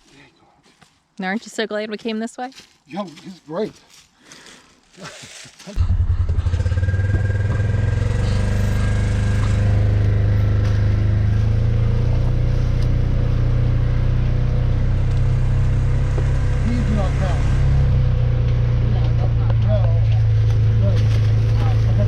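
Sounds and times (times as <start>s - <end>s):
vehicle engine starting and running: 5.8s - 22.0s.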